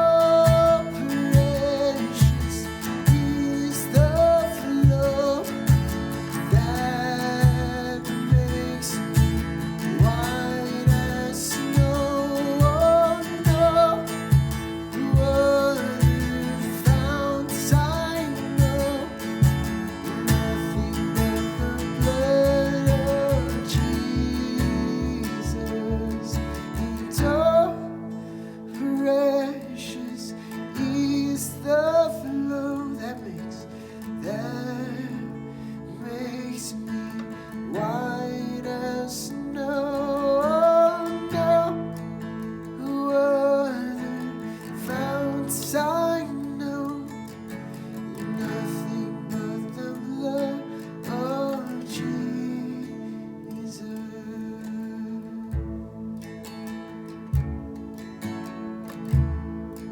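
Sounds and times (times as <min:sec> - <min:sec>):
person singing: 0:00.0 - 0:28.1, 0:42.8 - 0:47.4, 0:48.3 - 0:56.1
strummed acoustic guitar: 0:00.0 - 0:59.9.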